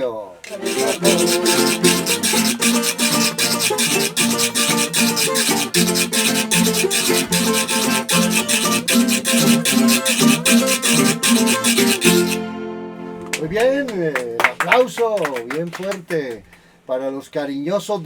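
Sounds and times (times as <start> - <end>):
plucked strings: 0.4 - 13.6
fast scraping percussion beat: 0.5 - 12.4.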